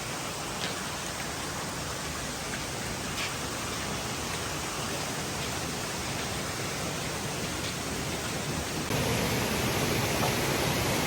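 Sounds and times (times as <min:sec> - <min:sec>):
waterfall rushing: 0:02.8 - 0:11.0.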